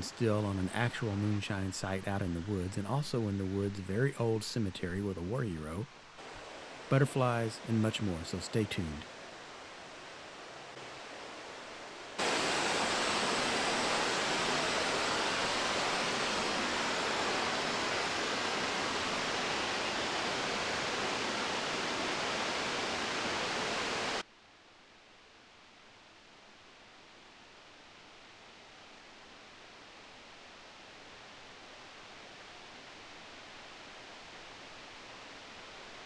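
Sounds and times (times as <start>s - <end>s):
waterfall rushing: 0.0s - 9.1s, 12.2s - 24.2s
faint outdoor hiss: 0.0s - 36.0s.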